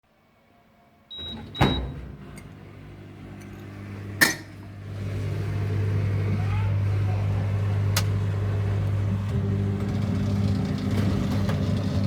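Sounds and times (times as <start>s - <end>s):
washing machine banging: 1.1s - 2.2s
washing machine motor humming: 1.1s - 12.0s.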